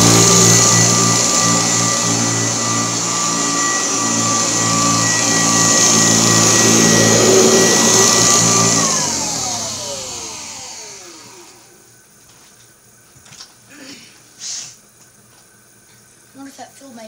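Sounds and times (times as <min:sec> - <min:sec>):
vacuum cleaner motor whine: 0:00.0 - 0:12.7.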